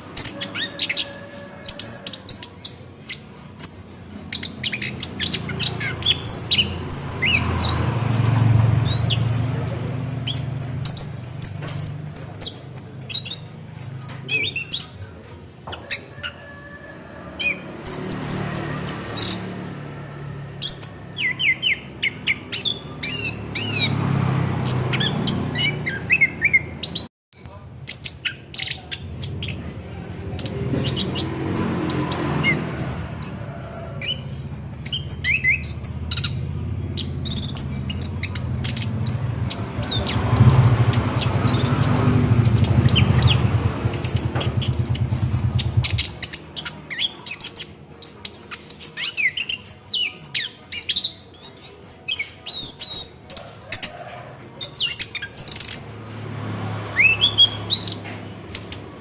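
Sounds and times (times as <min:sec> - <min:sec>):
bird singing whistled trills: 0:00.0 - 0:15.1.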